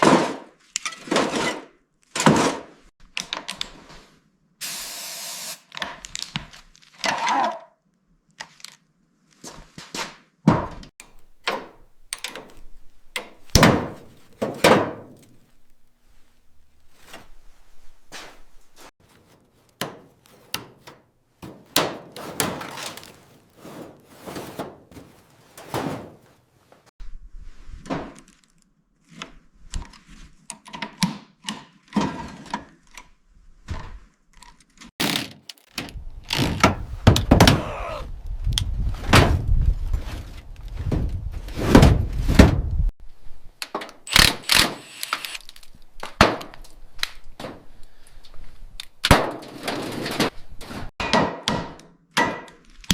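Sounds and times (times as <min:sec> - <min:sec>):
knocks and thunks on metal: 0:10.5 - 0:15.5, 0:19.8 - 0:26.4, 0:51.0 - 0:52.5.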